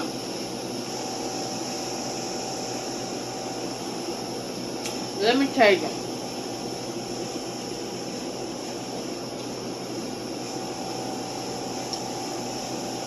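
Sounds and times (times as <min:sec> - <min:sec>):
room hiss and hum: 0:00.0 - 0:13.0.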